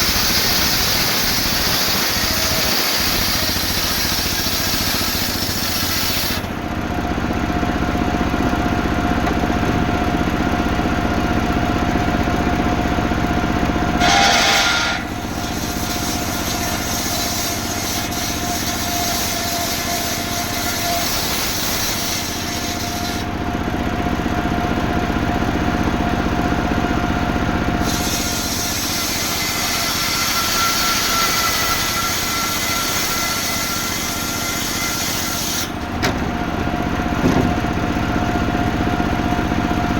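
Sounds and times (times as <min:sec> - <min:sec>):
chainsaw sawing through wood: 0:00.0 - 0:06.6, 0:14.0 - 0:23.4, 0:27.8 - 0:35.8.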